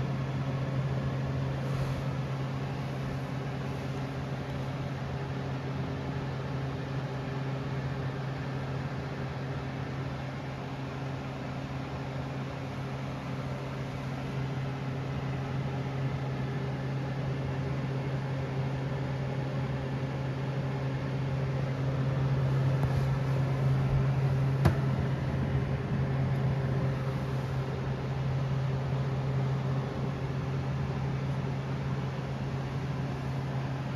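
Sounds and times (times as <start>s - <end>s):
blower fan humming: 0.0s - 18.3s, 20.4s - 33.9s
air noise: 1.5s - 5.1s, 22.0s - 30.3s.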